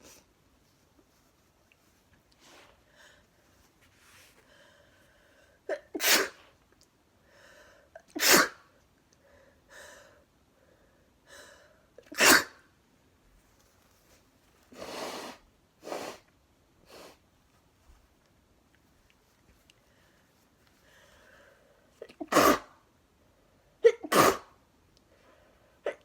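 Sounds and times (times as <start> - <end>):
person sneezing: 5.7 - 6.5, 8.1 - 8.6, 12.1 - 12.6, 22.0 - 22.7, 23.8 - 24.6.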